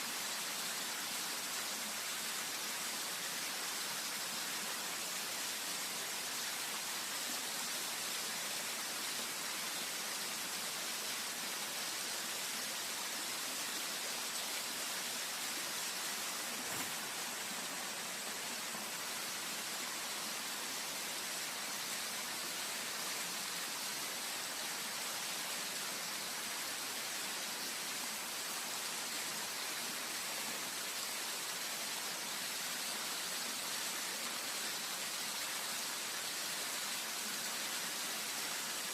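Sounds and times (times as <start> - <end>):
river water rushing: 12.4 - 24.5.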